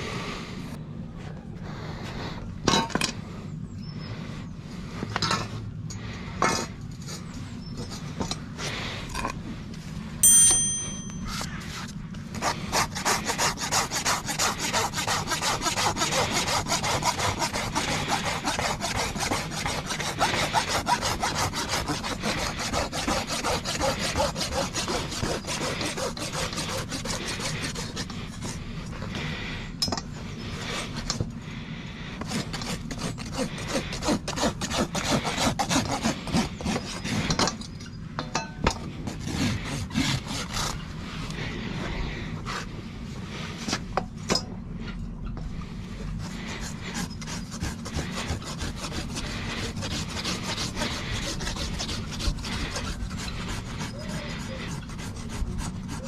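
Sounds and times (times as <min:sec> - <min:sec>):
rasp scraping a hoof: 0:06.3 - 0:09.4, 0:10.6 - 0:31.4, 0:32.1 - 0:42.8, 0:44.8 - 0:56.0
ringing metallic clink: 0:10.2 - 0:11.4.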